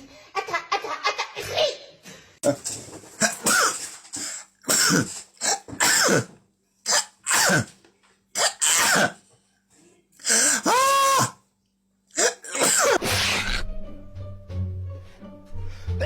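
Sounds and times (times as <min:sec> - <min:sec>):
person sneezing: 0:03.2 - 0:07.8, 0:08.4 - 0:09.2, 0:10.2 - 0:11.4, 0:12.2 - 0:13.7.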